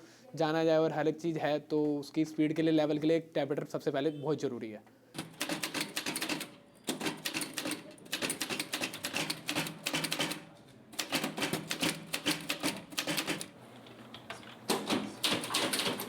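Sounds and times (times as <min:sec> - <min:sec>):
typewriter keys typing fast: 0:05.2 - 0:13.5, 0:14.7 - 0:16.0.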